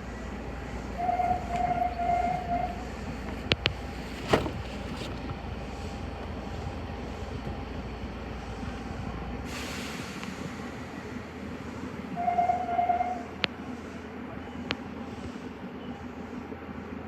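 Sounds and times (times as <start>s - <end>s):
train running rumble: 0.0s - 17.0s
short air hiss: 9.5s - 10.6s.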